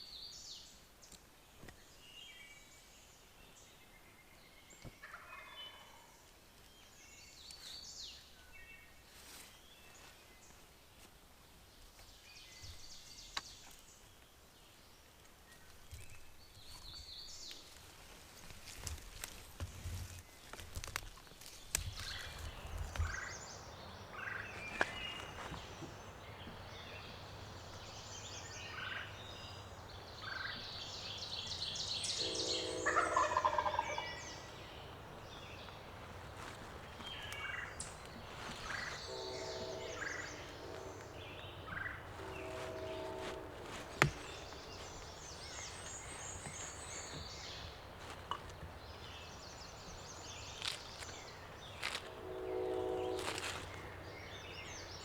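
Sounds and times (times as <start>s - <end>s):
songbirds chirping: 0.0s - 55.0s
wild turkey gobbling: 5.0s - 6.0s, 32.4s - 35.2s.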